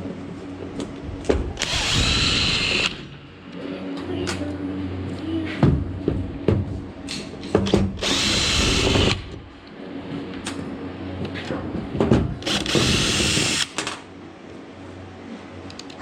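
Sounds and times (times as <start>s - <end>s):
power drill driver running: 1.6s - 3.2s, 7.7s - 9.5s, 12.4s - 13.9s.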